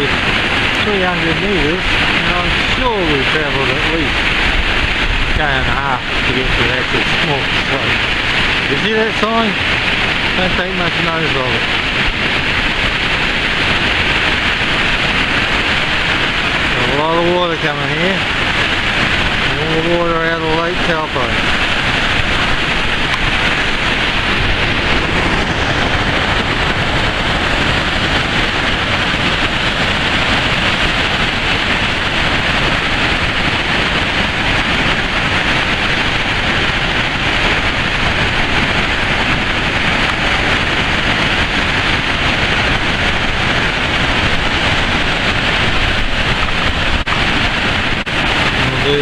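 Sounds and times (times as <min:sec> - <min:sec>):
roar of rushing white water: 0:00.0 - 0:49.0.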